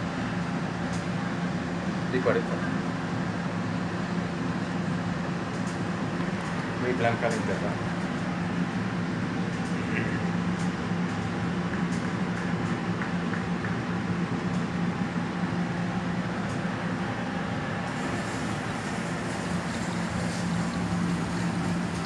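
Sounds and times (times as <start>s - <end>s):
washing machine humming: 0.0s - 22.0s
high hiss: 17.8s - 22.0s.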